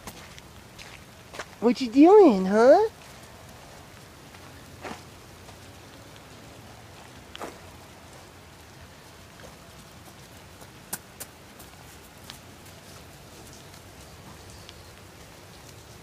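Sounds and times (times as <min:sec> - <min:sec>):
light rain falling: 0:00.0 - 0:16.0
raindrop ticks: 0:05.4 - 0:12.8.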